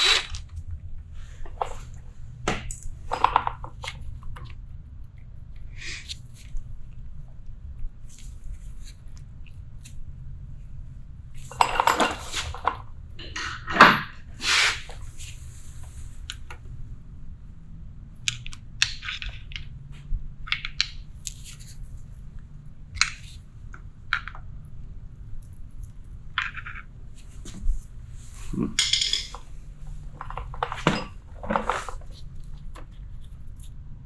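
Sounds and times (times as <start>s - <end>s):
metal tools clinking and scraping: 3.1s - 3.6s, 11.4s - 14.2s, 28.7s - 32.2s.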